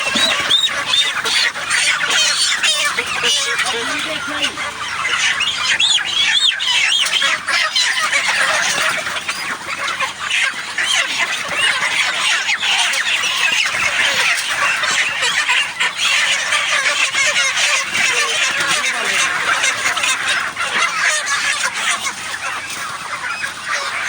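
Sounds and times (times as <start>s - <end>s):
flock of chickens peeping and clucking: 0.0s - 24.0s.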